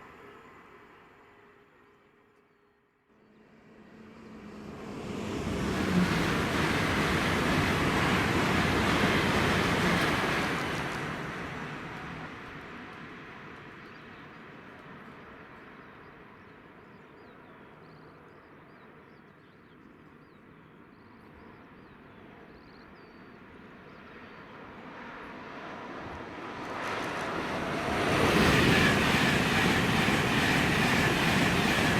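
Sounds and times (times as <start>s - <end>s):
train rumbling past: 3.4s - 13.8s, 25.0s - 31.9s.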